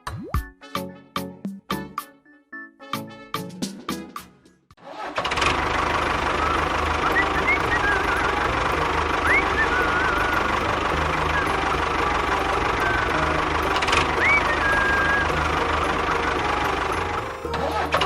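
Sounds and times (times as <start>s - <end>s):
small tractor engine running: 4.9s - 18.0s.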